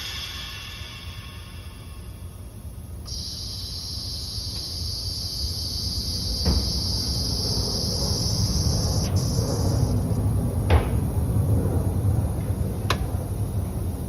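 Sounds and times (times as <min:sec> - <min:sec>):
low rumble: 0:00.0 - 0:03.1
compressed air hissing: 0:00.0 - 0:10.2.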